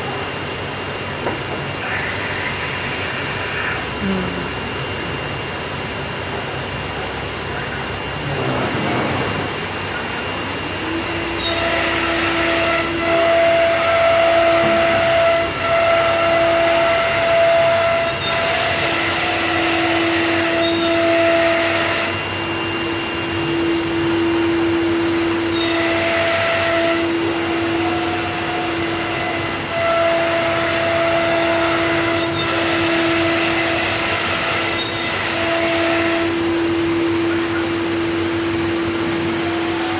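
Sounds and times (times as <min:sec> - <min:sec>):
high whine: 0:00.0 - 0:39.9
router machine rushing noise: 0:08.0 - 0:39.9.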